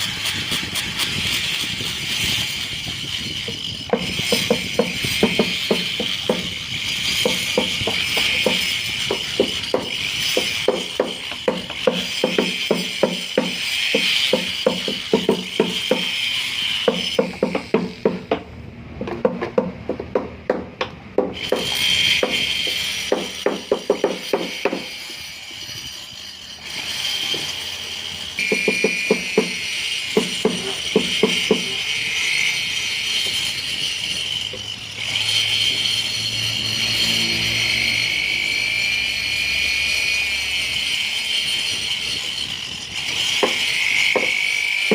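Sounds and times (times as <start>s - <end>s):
die grinder whining: 0.0s - 19.1s, 20.8s - 44.9s
music with clicking percussion beat: 3.4s - 25.1s, 28.4s - 34.7s, 43.2s - 44.9s.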